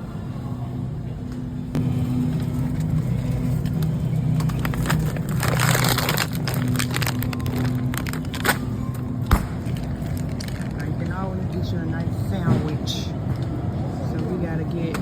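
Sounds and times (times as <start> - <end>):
low machine hum: 0.0 - 15.0
crinkling and rustling: 2.0 - 11.6.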